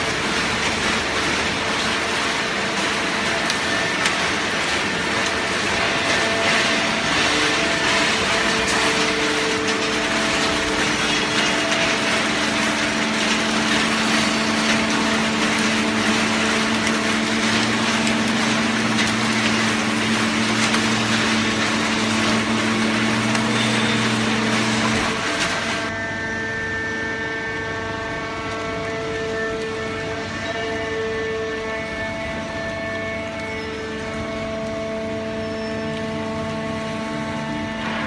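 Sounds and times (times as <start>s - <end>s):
baler machine running: 0.0s - 26.0s.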